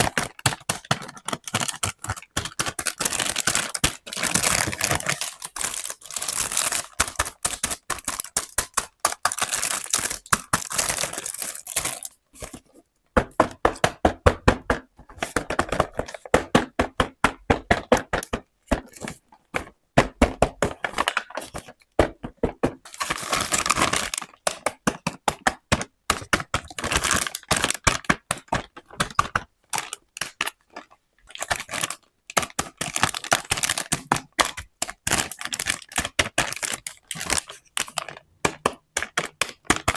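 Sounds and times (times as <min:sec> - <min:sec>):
plastic toy pieces clicking: 0:00.0 - 0:12.2, 0:26.5 - 0:39.9.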